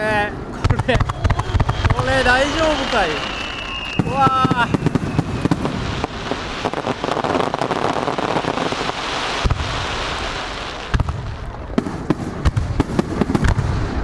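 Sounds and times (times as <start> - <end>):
fireworks booming: 0.0 - 14.0
fireworks crackling: 0.0 - 14.0.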